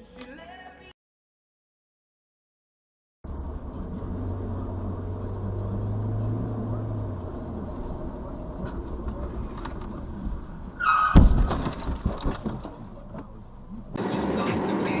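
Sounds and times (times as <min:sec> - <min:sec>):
road noise: 0:03.2 - 0:15.0
car crash: 0:08.2 - 0:13.4
brief tyre squeal: 0:10.8 - 0:11.2
clattering and knocking: 0:11.2 - 0:13.4.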